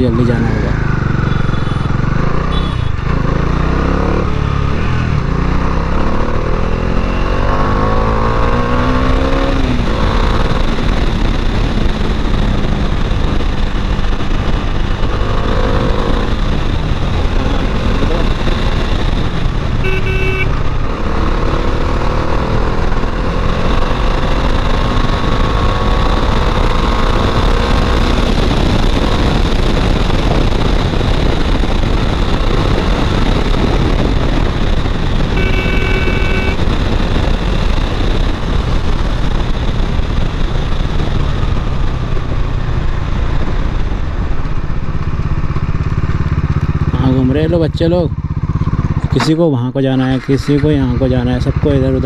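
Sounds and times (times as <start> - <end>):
motorcycle engine running: 0.0 - 49.3
horn beeping: 0.7 - 3.1, 19.8 - 20.8, 35.3 - 36.8
wind rush: 23.9 - 35.4.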